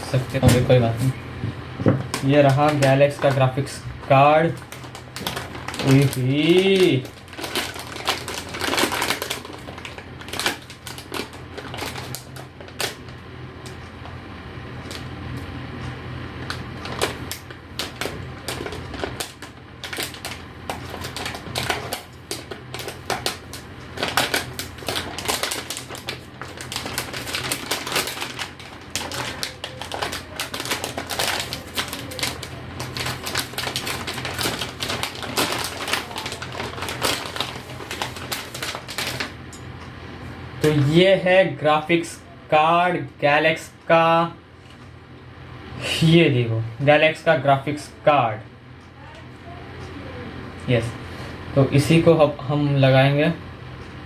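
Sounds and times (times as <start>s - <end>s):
packaging clicks and crackles: 2.1s - 3.6s, 4.5s - 13.8s, 16.4s - 39.3s.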